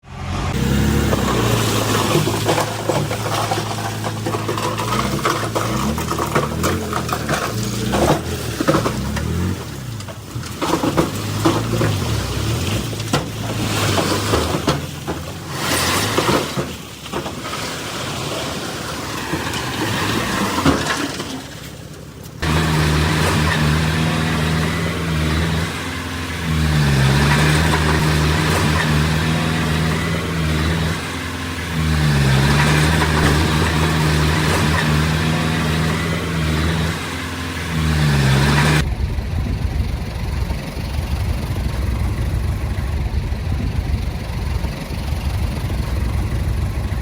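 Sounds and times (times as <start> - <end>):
heavy machinery diesel engines: 0.0 - 47.0
metal clanks and knocks: 1.0 - 17.8.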